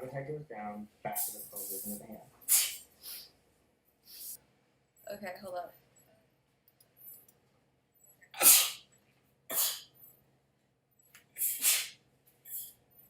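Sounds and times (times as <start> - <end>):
woman sneezing: 2.5 - 2.8, 8.4 - 8.8, 9.5 - 9.9, 11.4 - 12.0.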